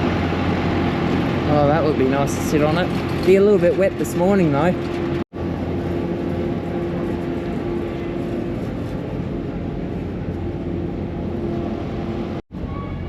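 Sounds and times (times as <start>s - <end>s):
engine rumbling: 0.0s - 12.7s.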